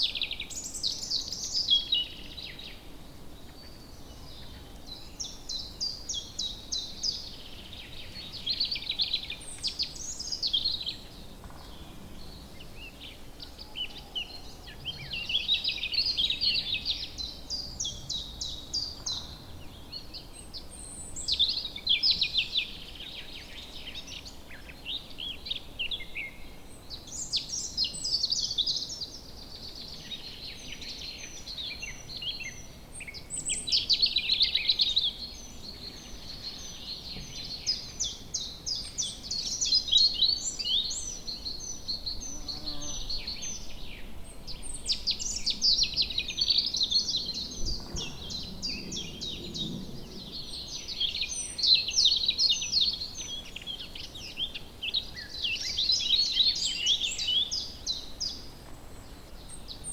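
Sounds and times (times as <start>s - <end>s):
birds singing and chirping: 0.0s - 59.9s.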